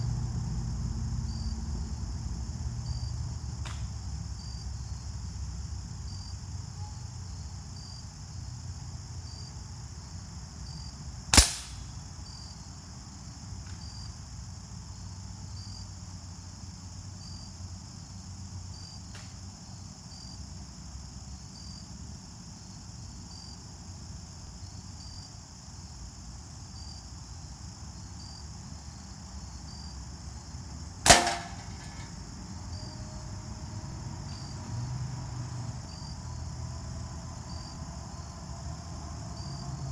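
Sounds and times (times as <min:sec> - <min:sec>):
crickets chirping: 0:00.0 - 0:39.9
gunshots: 0:11.4 - 0:11.8, 0:31.1 - 0:32.1.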